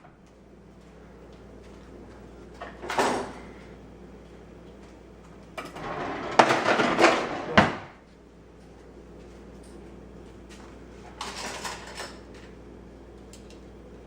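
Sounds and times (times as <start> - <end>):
silverware and dishes clattering: 11.2 - 12.5.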